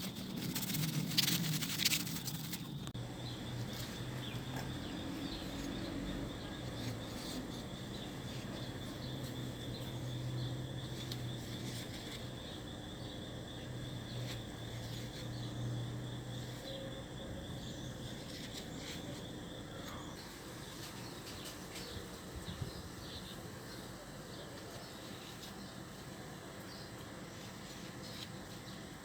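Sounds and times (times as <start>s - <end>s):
insects: 0.0s - 29.0s
birds chirping: 2.6s - 14.6s.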